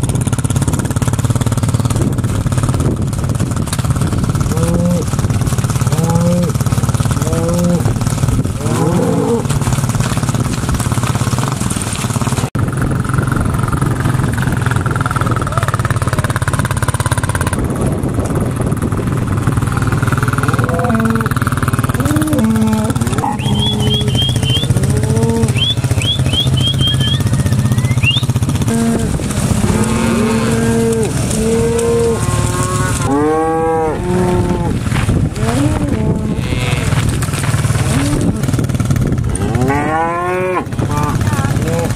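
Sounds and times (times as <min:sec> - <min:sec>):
steady engine hum: 0:00.0 - 0:41.9
cattle mooing: 0:04.5 - 0:05.2, 0:05.8 - 0:09.7, 0:20.5 - 0:27.3, 0:27.9 - 0:37.1, 0:37.8 - 0:38.6, 0:39.3 - 0:41.9.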